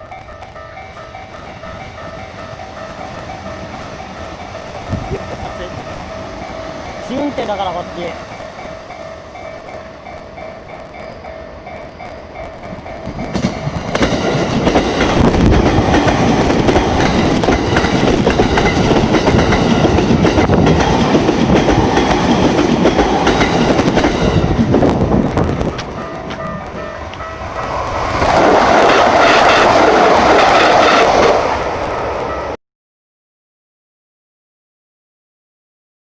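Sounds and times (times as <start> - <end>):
level crossing warning bell: 0.0 - 20.8, 25.4 - 27.8
train wheels rumbling and clacking: 0.1 - 32.5.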